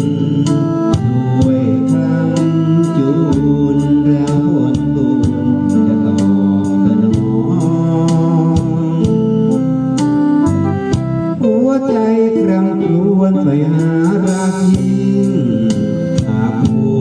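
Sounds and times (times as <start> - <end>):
electronic organ chords: 0.0 - 17.0
steady beat: 0.0 - 17.0.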